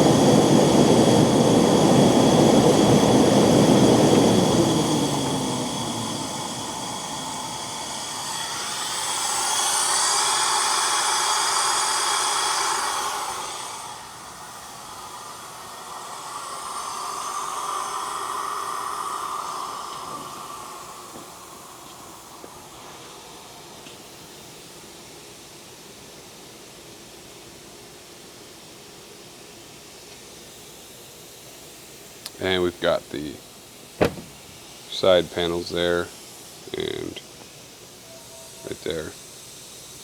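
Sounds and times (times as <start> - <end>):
air compressor winding down: 0.0 - 23.6, 34.0 - 36.1
air hissing: 0.0 - 24.6, 32.1 - 40.0.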